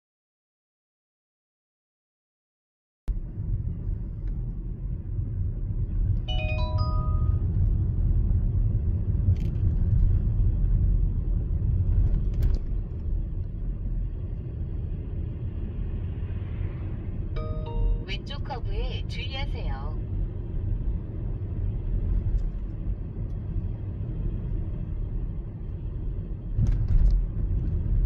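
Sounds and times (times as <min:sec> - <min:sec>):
car interior road and engine rumble: 0:03.1 - 0:28.0
rising electronic chime: 0:06.3 - 0:07.4, 0:17.4 - 0:18.4.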